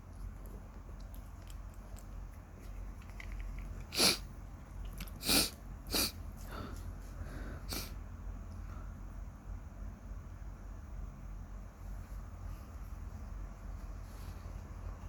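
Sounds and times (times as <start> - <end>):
person sneezing: 5.2 - 6.2.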